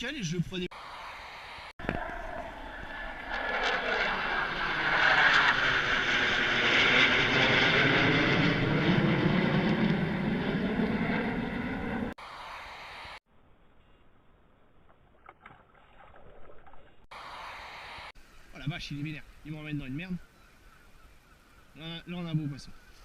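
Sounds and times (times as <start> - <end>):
motor passing close by: 2.1 - 12.2.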